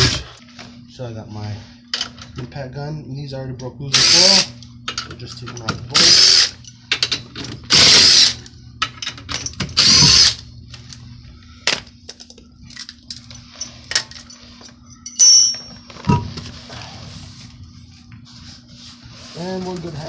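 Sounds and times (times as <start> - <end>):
ringing metal clink: 13.6 - 15.9.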